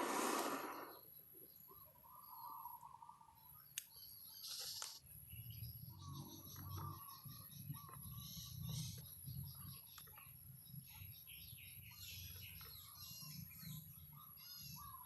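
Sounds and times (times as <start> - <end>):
small birds chirping: 0.0 - 15.0.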